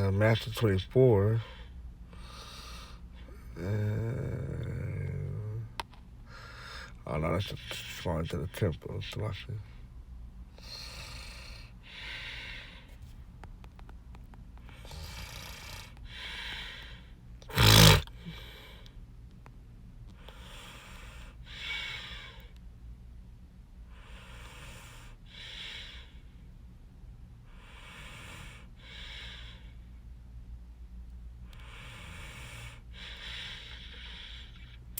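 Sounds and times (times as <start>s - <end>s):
man breathing close to microphone: 1.2s - 7.0s, 10.5s - 13.2s, 14.6s - 19.0s, 20.2s - 22.5s, 23.9s - 26.4s, 27.5s - 29.9s, 31.5s - 34.9s.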